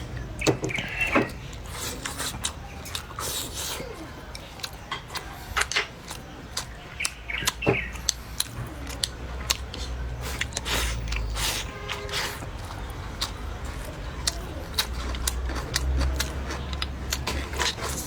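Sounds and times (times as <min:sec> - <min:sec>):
person chewing with clicks: 0:00.0 - 0:18.0.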